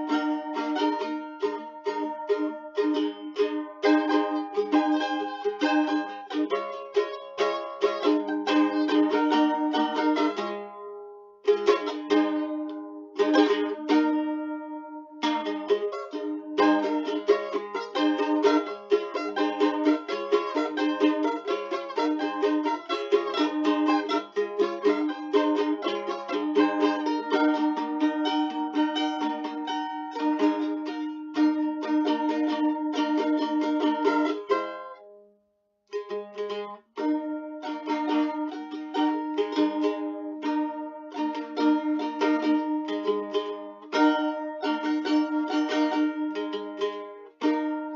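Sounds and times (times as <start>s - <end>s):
plucked string music: 0.0s - 47.9s.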